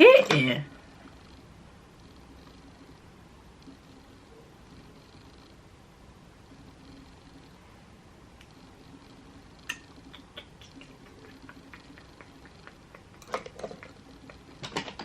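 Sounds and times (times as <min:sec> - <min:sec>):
cosmetic cases clicking and tapping: 0:12.9 - 0:15.0
cosmetics clattering: 0:12.9 - 0:15.0.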